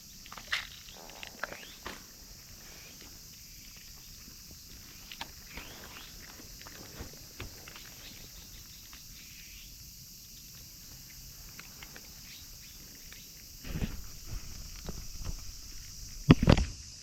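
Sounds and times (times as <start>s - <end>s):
crickets chirring: 0.0s - 17.0s
low rustle: 13.5s - 16.5s.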